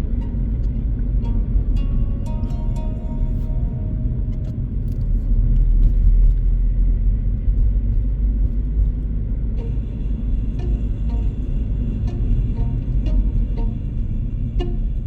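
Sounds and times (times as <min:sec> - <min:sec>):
music: 0:00.0 - 0:05.6, 0:09.5 - 0:15.0
car engine and road noise: 0:00.0 - 0:15.0.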